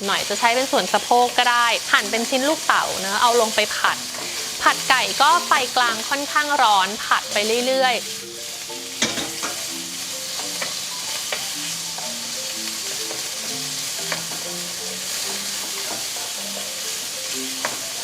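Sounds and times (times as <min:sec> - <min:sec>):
chicken sizzling in hot oil: 0:00.0 - 0:18.0
spatula clicking against pan: 0:10.3 - 0:12.1, 0:14.0 - 0:14.5, 0:15.4 - 0:16.8, 0:17.4 - 0:18.0.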